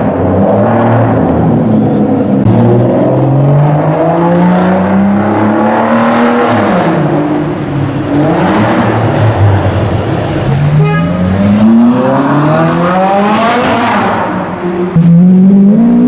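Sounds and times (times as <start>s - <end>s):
sports car engine accelerating: 0.0s - 16.0s.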